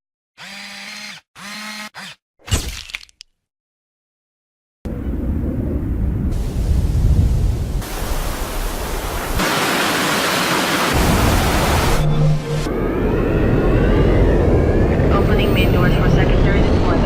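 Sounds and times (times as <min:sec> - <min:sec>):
deep rumble: 0:04.9 - 0:09.2, 0:11.0 - 0:17.0.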